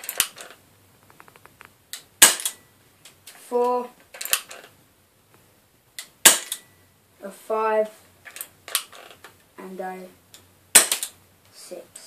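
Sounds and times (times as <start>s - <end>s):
bb gun shot: 2.2s - 2.6s, 6.2s - 6.6s, 10.8s - 11.1s.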